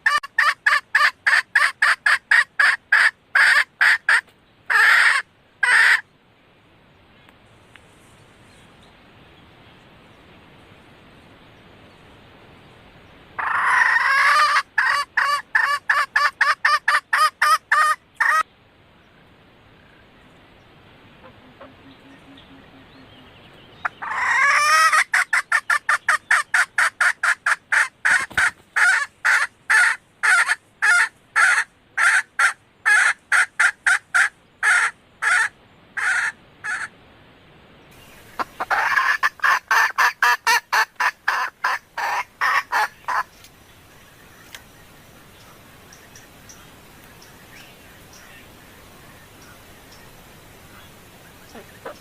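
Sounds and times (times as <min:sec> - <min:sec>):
junglefowl hen clucking: 0:00.0 - 0:06.1, 0:13.4 - 0:18.5, 0:21.2 - 0:36.9, 0:38.0 - 0:43.5, 0:51.3 - 0:52.0.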